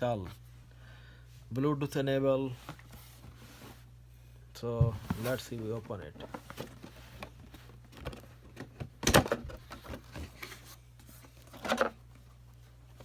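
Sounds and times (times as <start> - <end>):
steady low hum: 0.0 - 13.0
cardboard box rustling and scraping: 4.9 - 7.7.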